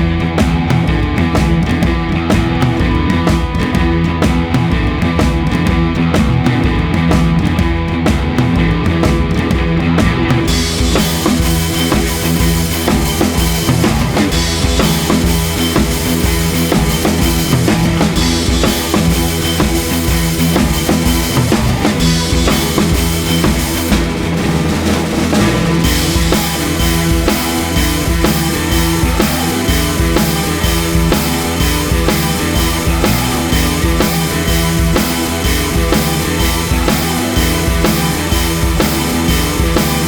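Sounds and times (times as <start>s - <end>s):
rock music with drum beat: 0.0s - 40.0s.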